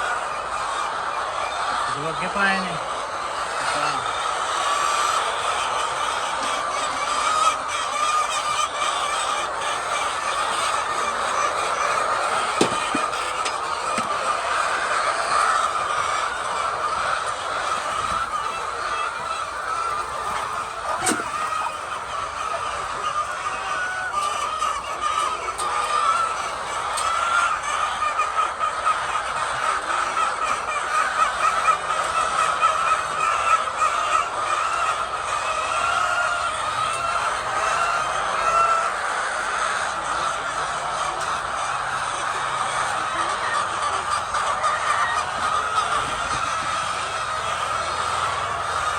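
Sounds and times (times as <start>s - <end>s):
chickens calling: 0.0s - 48.9s
hens clucking: 0.0s - 48.9s
sharp knocks: 12.6s - 13.1s.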